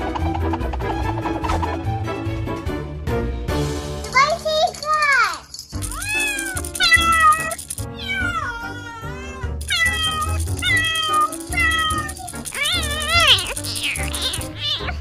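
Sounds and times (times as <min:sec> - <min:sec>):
background music: 0:00.0 - 0:15.0
kittens meowing: 0:05.9 - 0:15.0.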